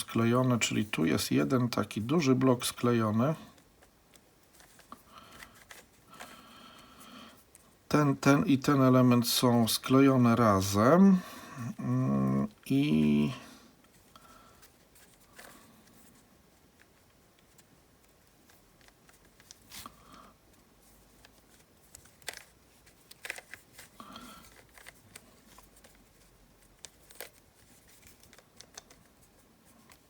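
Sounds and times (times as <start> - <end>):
puzzle cube plastic clicks: 21.1 - 30.0.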